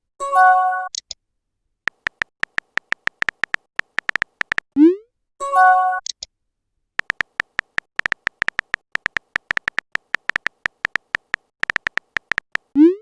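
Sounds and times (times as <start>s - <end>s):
phone keyboard typing clicks: 1.9s - 4.7s, 7.0s - 12.8s.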